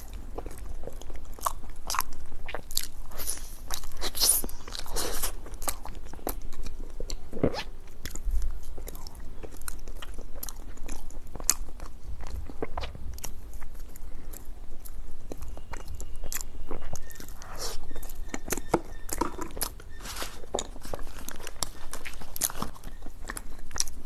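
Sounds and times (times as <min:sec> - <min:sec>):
crunching and chewing crisp snack: 0:00.0 - 0:24.0.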